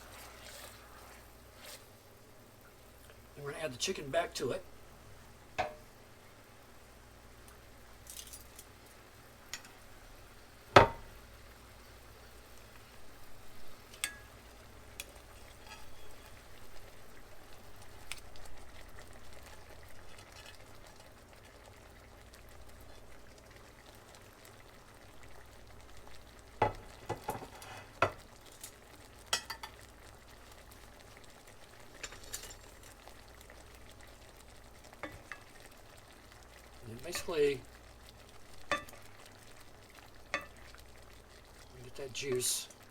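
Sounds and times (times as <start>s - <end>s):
low sizzle in a skillet: 0.0s - 42.9s
utensil knocking against pan: 5.6s - 5.8s.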